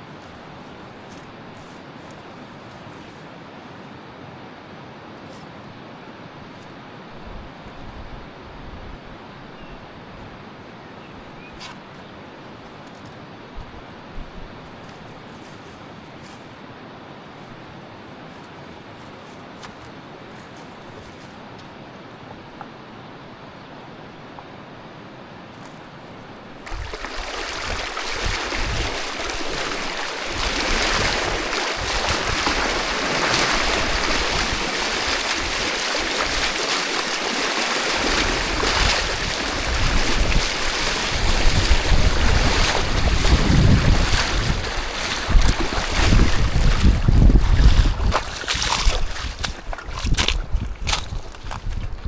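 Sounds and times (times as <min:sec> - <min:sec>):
river water rushing: 0:22.8 - 0:51.0
wind buffeting microphone: 0:26.6 - 0:52.0.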